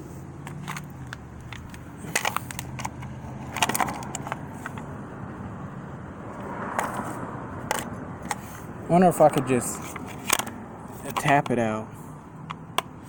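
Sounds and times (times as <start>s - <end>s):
metal parts clinking and rattling: 0.4s - 4.8s.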